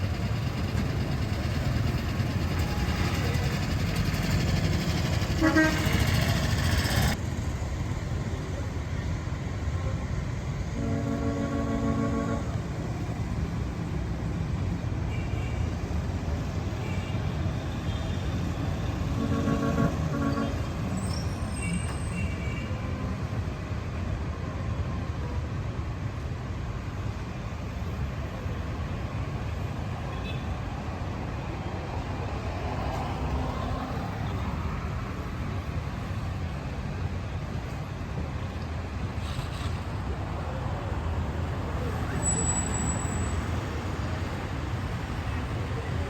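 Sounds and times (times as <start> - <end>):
street traffic rumble: 0.0 - 46.0
vehicle horn: 5.4 - 6.5, 10.8 - 12.6, 19.1 - 20.8.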